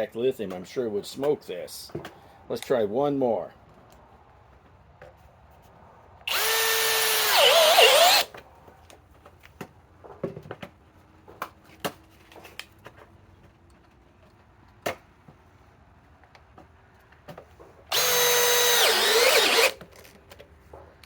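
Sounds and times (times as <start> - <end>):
drill driving screw into metal: 6.3 - 8.3, 17.9 - 19.8.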